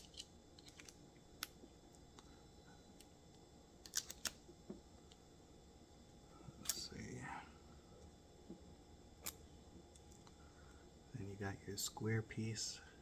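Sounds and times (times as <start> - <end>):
screwdriver bits clicking: 0.0 - 0.9.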